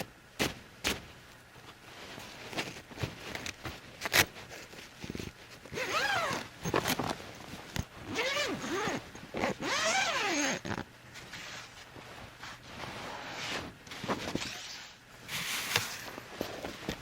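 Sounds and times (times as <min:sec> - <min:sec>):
zip-like rasp: 0:05.8 - 0:06.4, 0:08.1 - 0:11.7.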